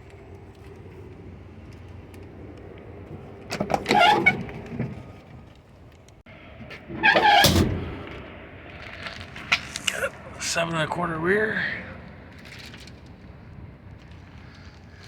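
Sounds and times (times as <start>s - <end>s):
steel car door creaking and clunking: 3.5s - 5.5s, 6.7s - 8.2s.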